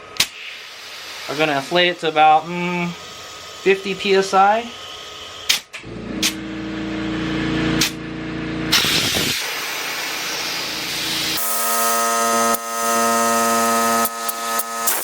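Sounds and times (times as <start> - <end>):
air compressor humming: 0.0 - 15.0
rushing hiss of air: 0.3 - 3.8, 8.7 - 11.8.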